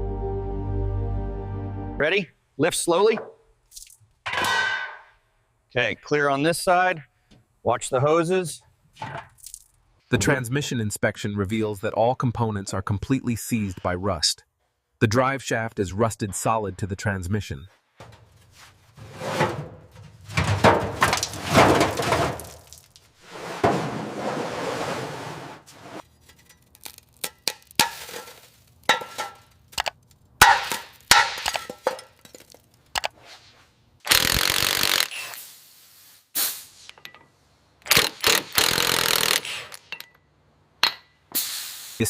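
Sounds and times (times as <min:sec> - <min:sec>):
workshop tool noise: 0:34.1 - 0:35.5, 0:36.6 - 0:40.2.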